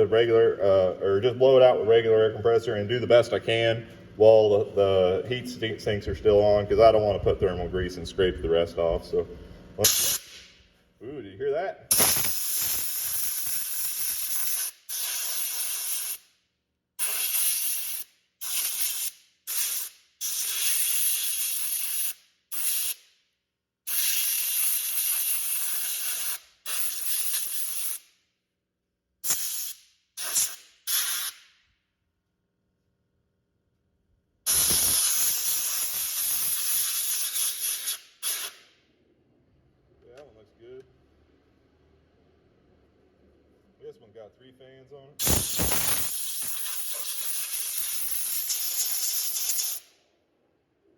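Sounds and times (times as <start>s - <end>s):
compressed air blow gun hissing: 9.8s - 10.4s, 11.9s - 16.2s, 34.5s - 38.6s, 45.2s - 49.8s.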